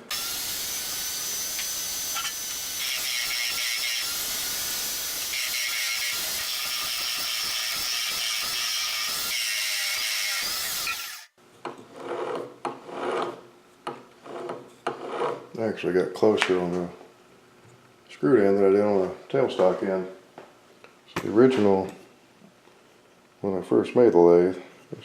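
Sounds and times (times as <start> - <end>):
wood lathe hissing: 0.0 - 7.8.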